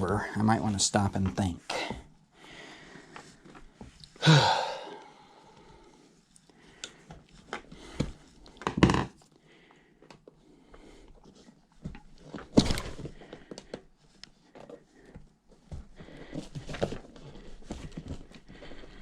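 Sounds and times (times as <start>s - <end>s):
loud thunks: 12.6s - 13.2s.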